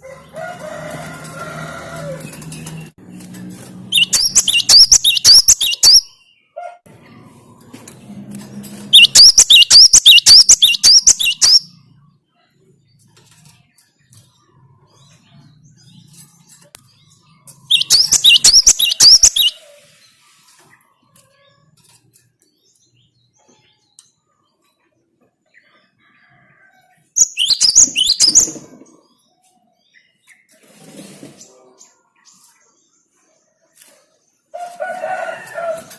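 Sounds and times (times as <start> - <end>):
bird rapid high chirping: 3.9 - 6.4, 8.9 - 11.8, 17.6 - 19.6, 27.2 - 28.7.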